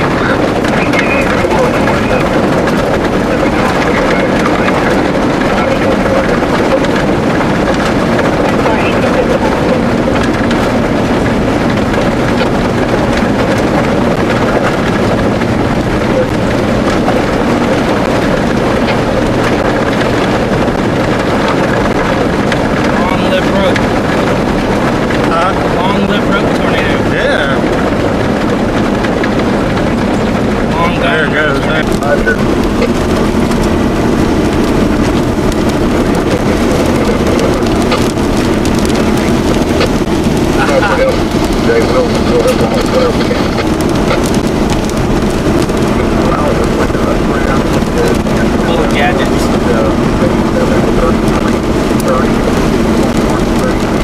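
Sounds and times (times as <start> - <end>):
road noise: 0.0 - 54.0
vehicle engine: 0.0 - 54.0
wind buffeting microphone: 0.0 - 54.0.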